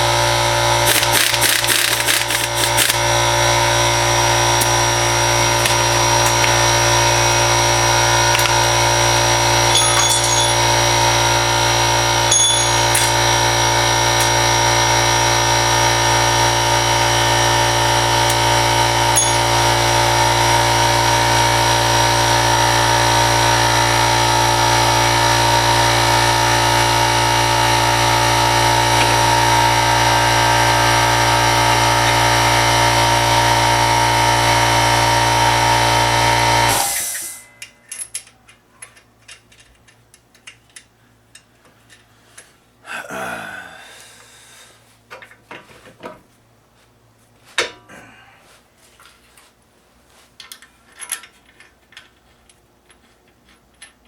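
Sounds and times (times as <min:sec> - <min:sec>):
machine humming: 0:00.0 - 0:37.4.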